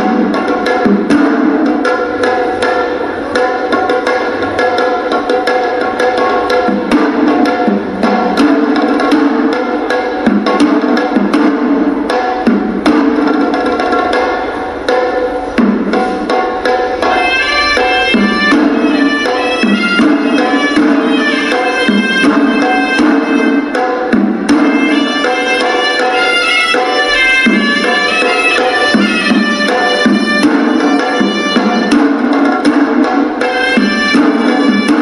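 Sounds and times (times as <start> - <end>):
drums beating dense rhythm: 0.0 - 35.0
shrill double-reed horn melody: 17.1 - 23.8, 24.7 - 32.0, 33.5 - 35.0.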